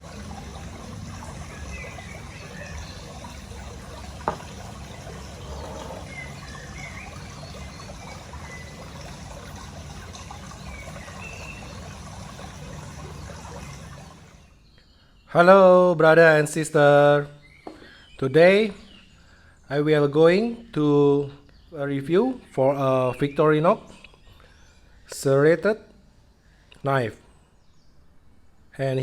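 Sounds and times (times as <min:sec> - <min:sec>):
water trickling: 0:00.0 - 0:14.7.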